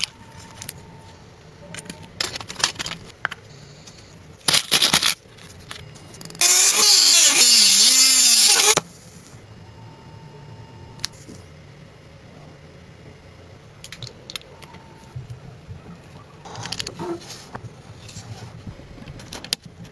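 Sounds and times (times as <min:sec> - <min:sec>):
power tool running: 0:06.4 - 0:08.8.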